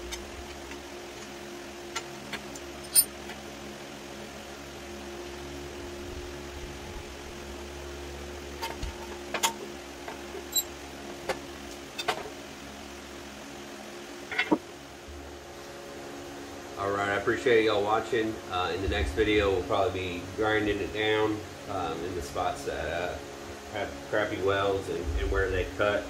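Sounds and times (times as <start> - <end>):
steady low hum: 0.0 - 26.0
metallic clinks of hand tools: 2.8 - 3.1.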